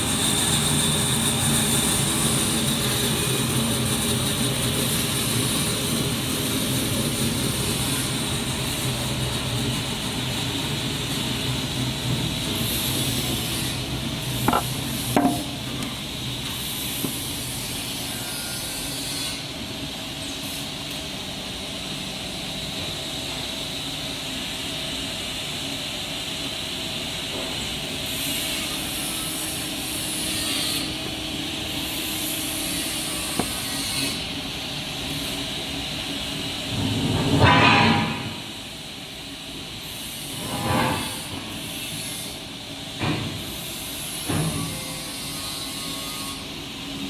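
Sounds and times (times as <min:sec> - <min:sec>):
band saw machine running: 0:00.0 - 0:18.5
sharp knocks: 0:14.4 - 0:15.9
hiss: 0:21.9 - 0:47.0.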